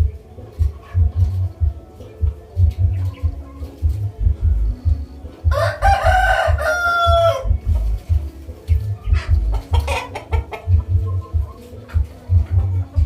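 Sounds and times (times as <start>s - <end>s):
clucking calls: 0.0s - 13.0s
low rhythmic thudding beat: 0.0s - 13.0s
rooster crowing: 5.4s - 7.5s.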